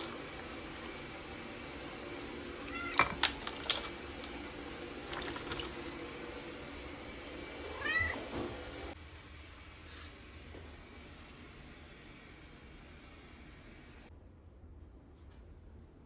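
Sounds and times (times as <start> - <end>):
cat meowing: 2.6 - 3.1, 7.7 - 8.3.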